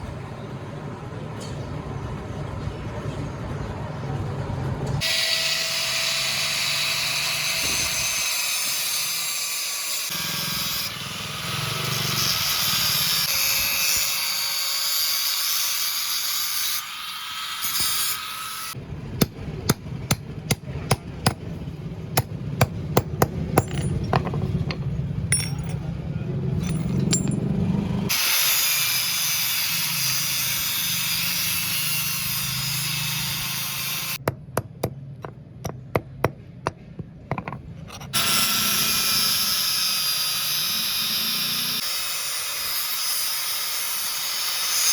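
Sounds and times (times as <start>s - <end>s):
power grinder on steel: 5.0s - 18.8s, 28.1s - 34.2s, 38.2s - 44.9s.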